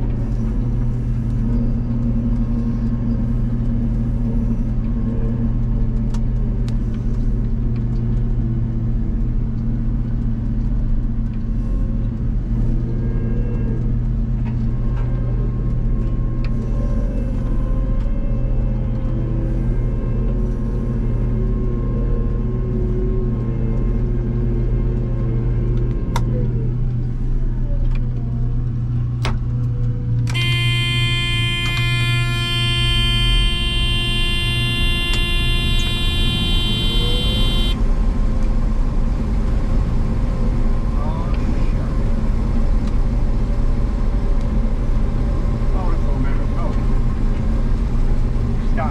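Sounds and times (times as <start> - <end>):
diesel engine droning: 12.4 - 48.9
sustained alarm tone: 30.3 - 37.8.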